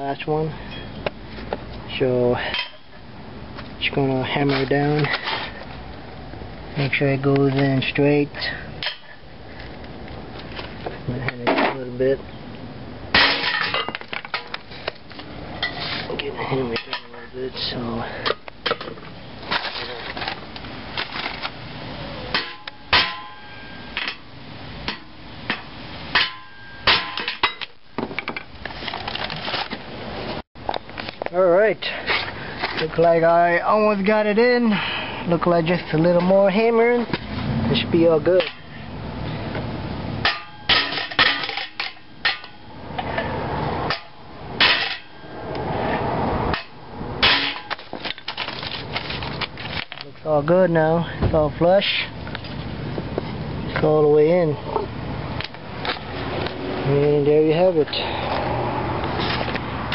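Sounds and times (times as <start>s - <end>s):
hammer blows with metallic ring: 22.3s - 24.1s, 26.1s - 27.6s, 40.2s - 42.8s.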